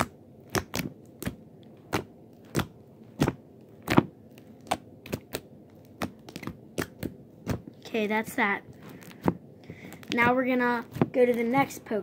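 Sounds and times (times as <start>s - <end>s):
fingers poking slime popping: 0.0s - 7.8s.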